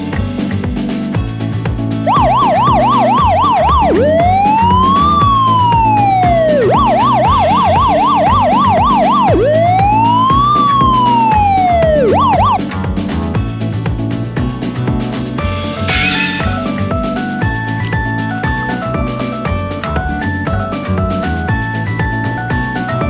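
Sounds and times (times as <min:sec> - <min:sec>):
background music: 0:00.0 - 0:22.0
emergency siren yelp and wail: 0:02.1 - 0:12.6.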